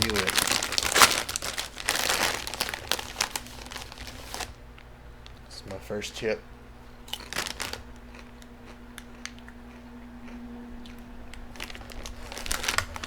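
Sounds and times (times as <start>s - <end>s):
potato chip crunching: 0.0s - 4.5s, 7.1s - 13.0s
person chewing: 7.1s - 13.0s.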